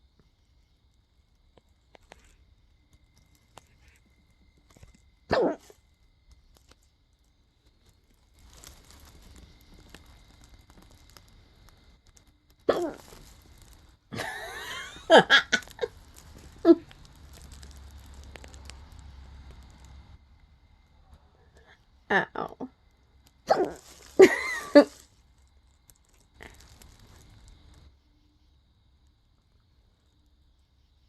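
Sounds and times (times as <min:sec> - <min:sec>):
person hiccuping: 0:05.3 - 0:05.7, 0:12.7 - 0:13.1, 0:23.5 - 0:25.0.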